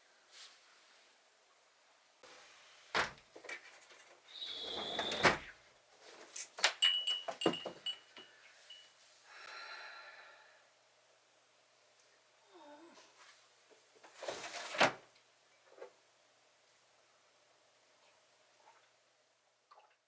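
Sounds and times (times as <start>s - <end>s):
door or cupboard being worked: 2.9s - 5.5s.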